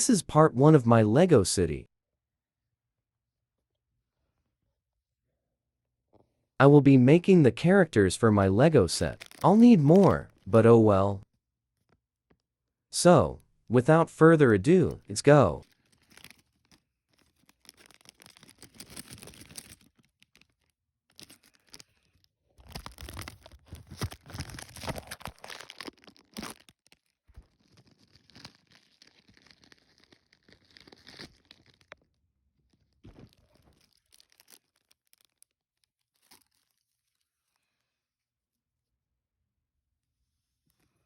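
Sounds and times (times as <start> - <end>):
packaging being torn and crinkled: 8.9 - 10.5, 15.6 - 37.2.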